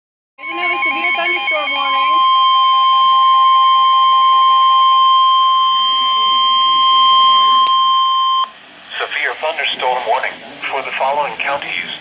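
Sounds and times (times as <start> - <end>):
loud steady alarm tone: 0.4 - 11.0
rapid beeping: 0.4 - 12.0.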